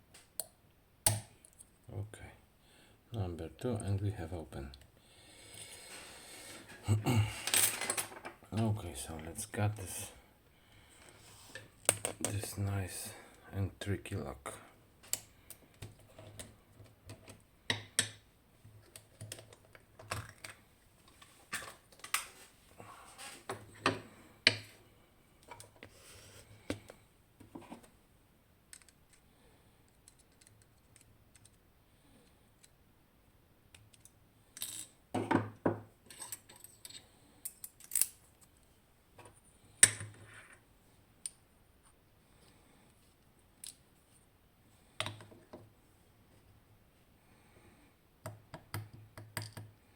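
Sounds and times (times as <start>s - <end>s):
metallic clicks of lock parts: 33.7s - 34.9s, 36.1s - 38.2s.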